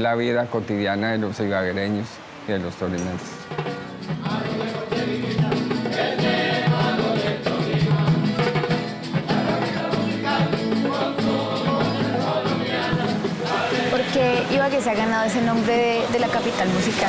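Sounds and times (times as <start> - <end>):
rhythmic instrumental accompaniment: 3.3 - 17.0
person singing: 9.3 - 14.8.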